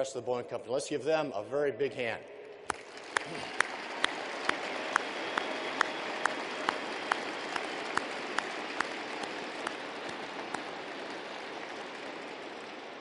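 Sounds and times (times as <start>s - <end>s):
sharp regular clap: 2.6s - 13.0s
large crowd applauding: 2.7s - 13.0s.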